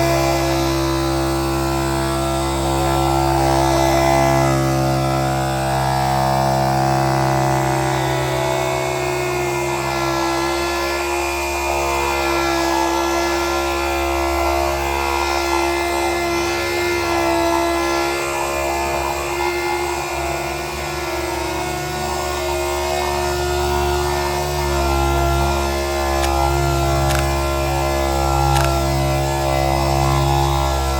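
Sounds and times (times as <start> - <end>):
power sander running: 0.0 - 30.9
sanding pad scrubbing: 25.2 - 29.0.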